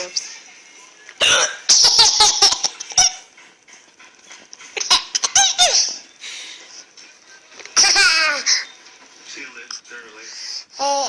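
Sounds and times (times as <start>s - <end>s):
baby laughing: 7.8s - 8.7s.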